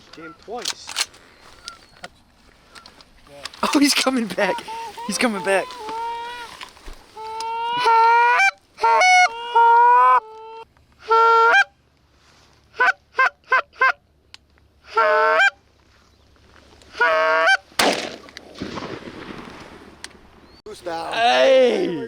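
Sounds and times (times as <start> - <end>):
goose call clucks: 3.6 - 6.6, 7.2 - 11.7, 12.7 - 14.0, 14.8 - 15.6, 16.9 - 17.7
goose call honks: 3.6 - 6.6, 7.2 - 11.7, 12.7 - 14.0, 14.8 - 15.6, 16.9 - 17.7
gunshot: 17.8 - 19.9.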